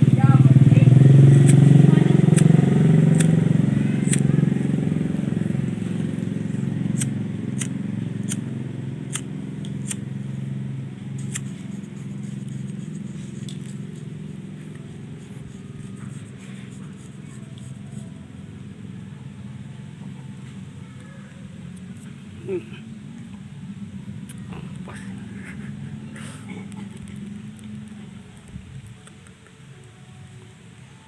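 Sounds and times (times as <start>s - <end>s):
low engine hum: 0.0s - 31.0s
sharp clicks: 2.4s - 3.4s, 4.1s - 4.3s, 9.1s - 10.0s.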